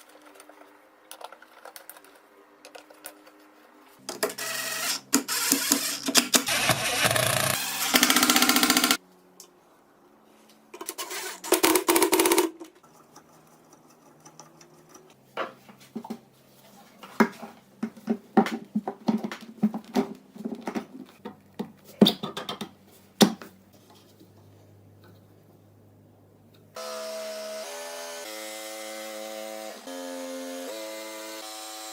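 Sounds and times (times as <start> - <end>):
power tool running: 4.2 - 9.0, 26.8 - 31.9.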